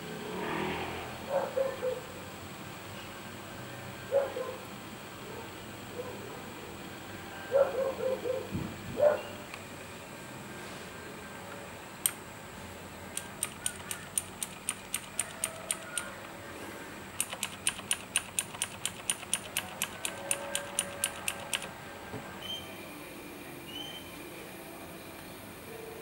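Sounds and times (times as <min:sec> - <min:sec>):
mechanical keyboard key clicks: 0:13.1 - 0:16.4, 0:17.2 - 0:21.7.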